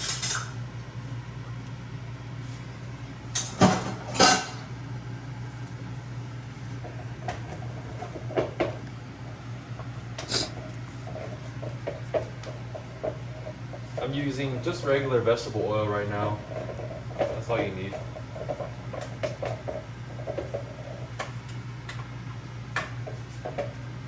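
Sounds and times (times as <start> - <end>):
steady low hum: 0.0 - 24.0
cookware clattering on stovetop: 3.4 - 4.6.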